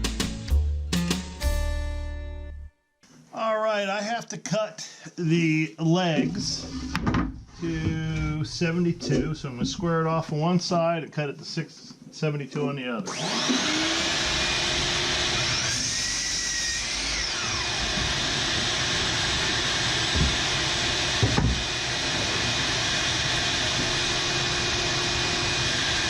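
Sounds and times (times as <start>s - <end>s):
dust extractor running: 13.1s - 26.0s
power saw cutting a board: 13.1s - 26.0s
knocks: 21.2s - 21.7s.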